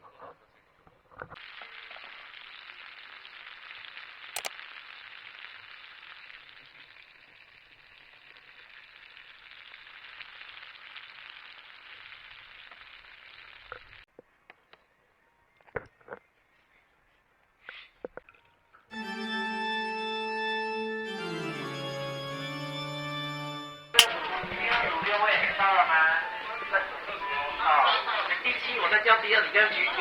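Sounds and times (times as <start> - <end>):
crackling hiss: 1.3 - 14.1.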